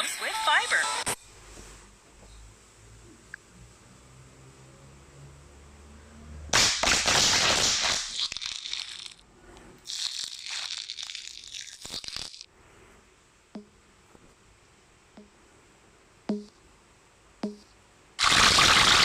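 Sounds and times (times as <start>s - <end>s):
crackling crinkling noise: 7.4s - 12.5s.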